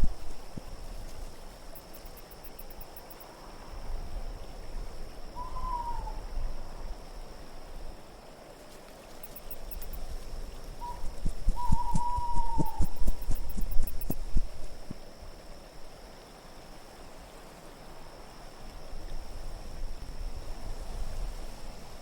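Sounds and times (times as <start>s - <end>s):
steady wind: 0.0s - 22.0s
owl hooting: 5.4s - 6.3s, 10.8s - 14.7s.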